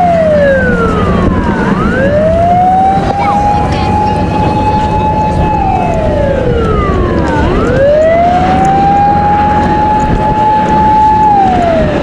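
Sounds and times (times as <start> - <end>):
fire truck siren wailing: 0.0 - 12.0.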